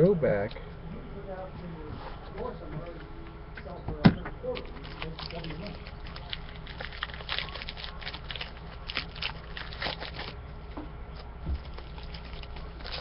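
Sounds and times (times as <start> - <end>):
foil wrapper crinkling: 4.5 - 10.4, 11.6 - 13.0.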